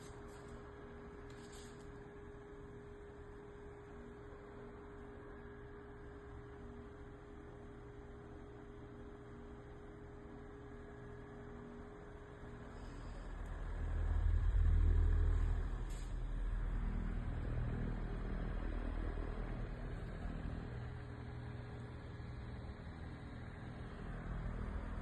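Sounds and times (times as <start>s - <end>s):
low electrical hum: 0.0s - 25.0s
low rumble: 13.4s - 19.9s.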